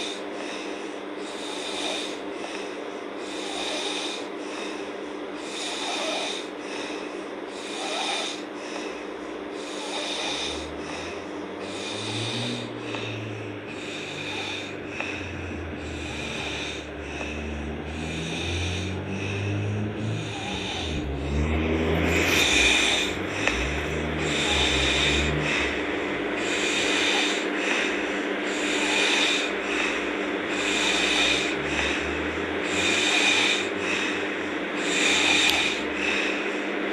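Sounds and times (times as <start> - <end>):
girl snoring: 0.0 - 4.8, 5.4 - 36.5
low uneven rumble: 10.5 - 26.9.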